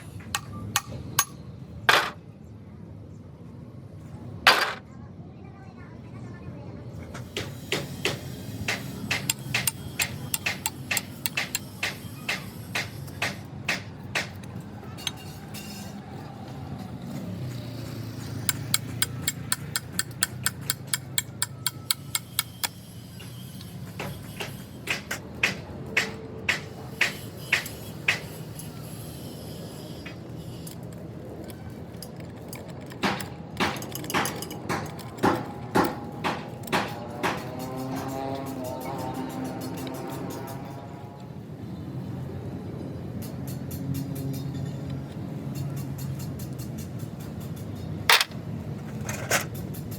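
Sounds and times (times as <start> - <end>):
metal tools tapping and knocking: 0.1 - 2.2, 7.2 - 16.0, 18.4 - 28.8, 30.1 - 40.8, 43.2 - 49.9.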